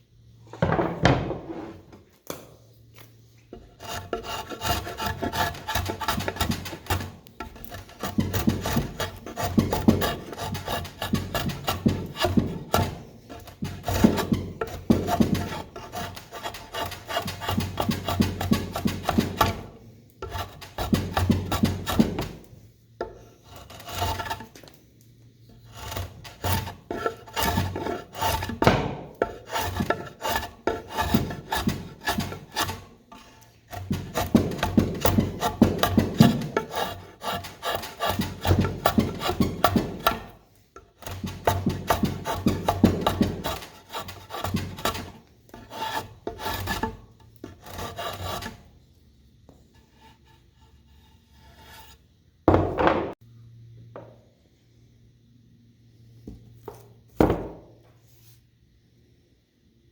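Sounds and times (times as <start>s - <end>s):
rasping hand-tool strokes: 3.5s - 24.7s, 25.5s - 40.4s, 41.0s - 48.6s.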